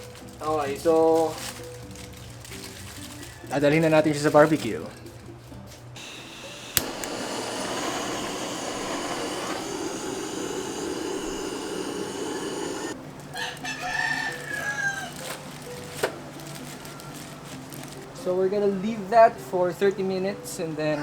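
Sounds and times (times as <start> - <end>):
steady rushing noise: 6.0 - 13.0
rooster crowing: 9.6 - 15.3.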